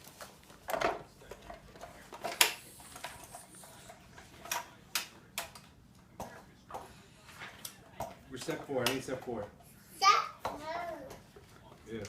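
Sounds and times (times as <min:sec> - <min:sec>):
sharp clicks and light knocks: 0:07.6 - 0:09.4.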